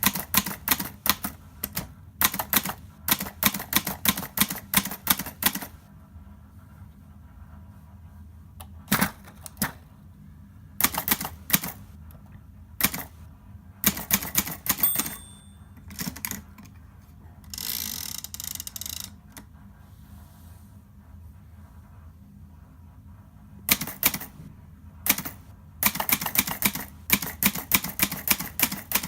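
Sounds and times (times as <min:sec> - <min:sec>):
typewriter keystrikes clacking: 0:00.0 - 0:05.7, 0:10.8 - 0:11.8, 0:12.8 - 0:13.1, 0:13.8 - 0:16.6, 0:23.7 - 0:24.4, 0:25.1 - 0:29.0
typewriter bell ringing: 0:14.4 - 0:16.1.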